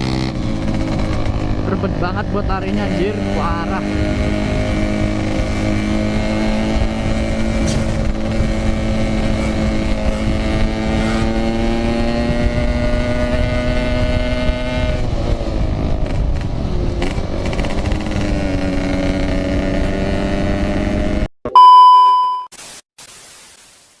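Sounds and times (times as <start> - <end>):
motorcycle engine accelerating: 0.0 - 21.3
loud electronic beep: 21.5 - 22.6.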